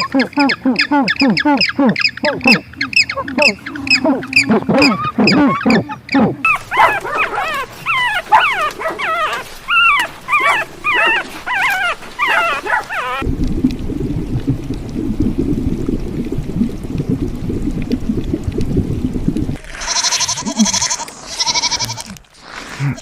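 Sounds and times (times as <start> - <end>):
dog whimpering and yipping: 4.8 - 13.2
steady low rumbling noise: 5.9 - 19.6.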